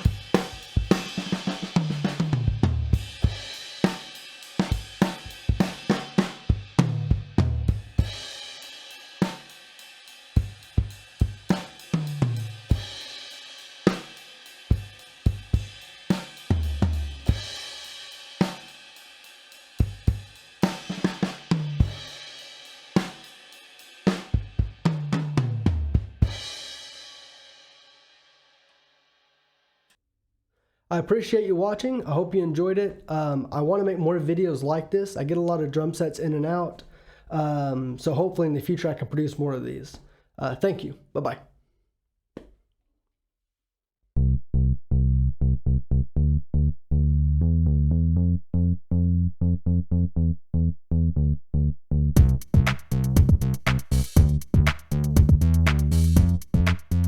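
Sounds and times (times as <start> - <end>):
drum kit playing: 0.0 - 27.0, 52.2 - 57.0.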